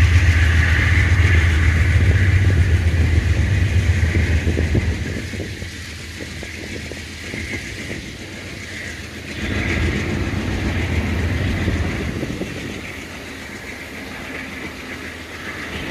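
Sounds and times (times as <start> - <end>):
train rolling past: 0.0 - 15.9
train wheel hiss: 0.0 - 15.9.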